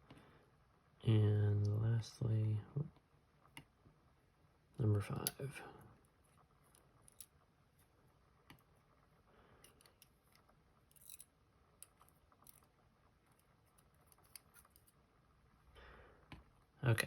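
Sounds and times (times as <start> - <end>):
faint metal lock parts clicking: 6.7 - 7.4, 9.6 - 12.7, 13.3 - 15.0.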